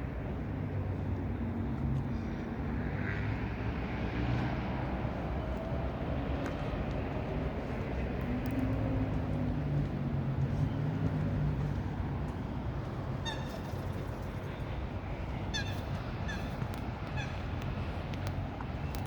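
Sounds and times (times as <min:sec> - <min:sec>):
bird calling: 0:13.2 - 0:14.0.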